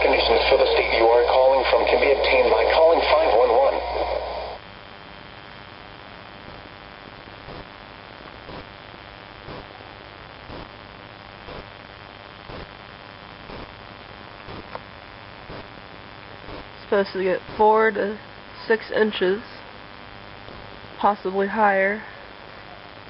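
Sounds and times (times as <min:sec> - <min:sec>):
announcer's voice: 0:00.0 - 0:04.3, 0:16.9 - 0:19.6, 0:21.0 - 0:22.1
radio hum and hiss: 0:00.0 - 0:23.0.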